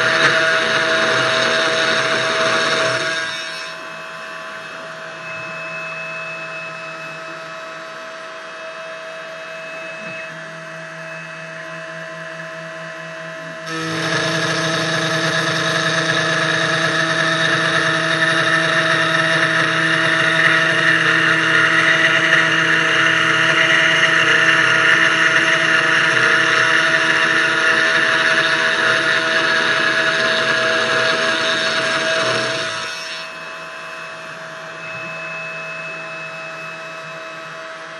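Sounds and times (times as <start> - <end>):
end mill cutting: 0.0 - 3.8, 13.6 - 33.4
router spindle running: 0.0 - 6.0, 13.5 - 33.5.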